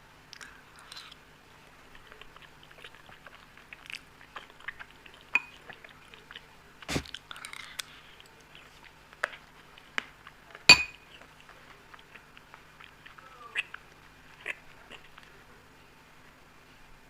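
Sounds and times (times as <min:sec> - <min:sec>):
close-up chewing: 0:00.2 - 0:15.6
sharp clinks: 0:10.7 - 0:11.0.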